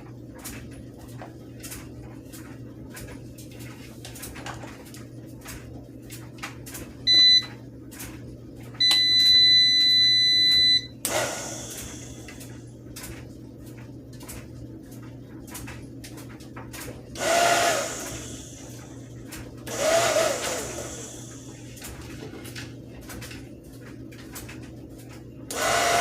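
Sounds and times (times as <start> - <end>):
low steady hum: 0.0 - 17.2
electronic beeper beeping: 8.8 - 10.9.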